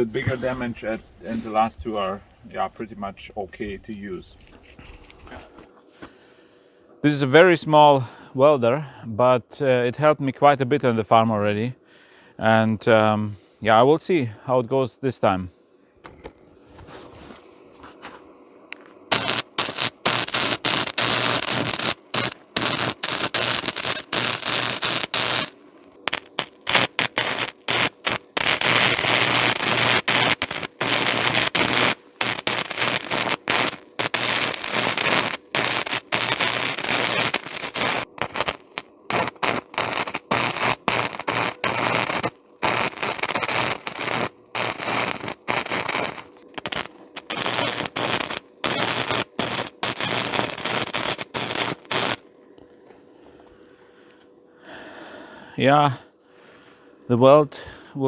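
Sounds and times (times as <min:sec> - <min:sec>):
arc welder crackling: 0:18.7 - 0:52.3.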